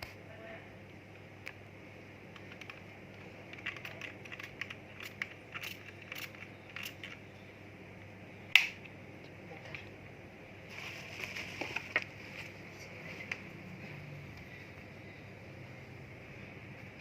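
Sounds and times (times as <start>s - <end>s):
hard objects clicking and rattling: 3.5s - 7.2s.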